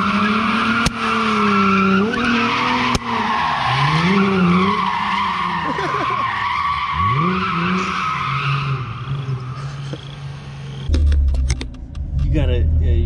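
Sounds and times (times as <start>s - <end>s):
car engine revving: 0.0s - 13.0s
loud low rumble with sharp clicks: 10.8s - 13.0s.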